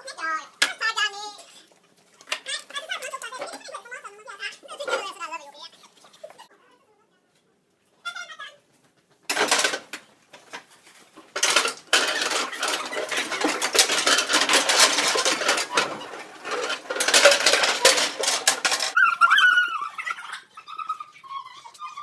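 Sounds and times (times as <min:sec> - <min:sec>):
rapid dense clattering and clinking: 0:09.3 - 0:19.0.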